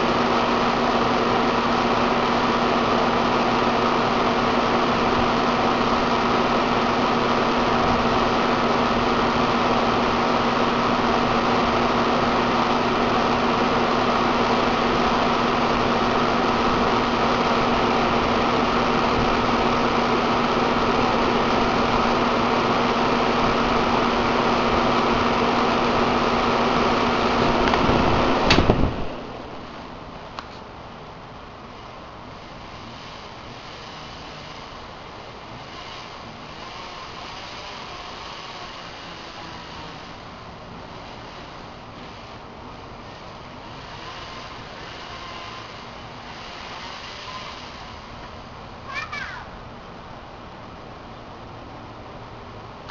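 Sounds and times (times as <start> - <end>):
air conditioner fan humming: 0.0 - 52.9
air conditioner switching off click: 27.4 - 29.2.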